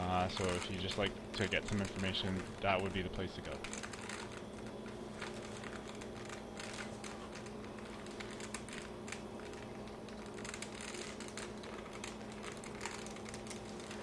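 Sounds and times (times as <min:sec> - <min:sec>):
steady low hum: 0:00.0 - 0:14.0.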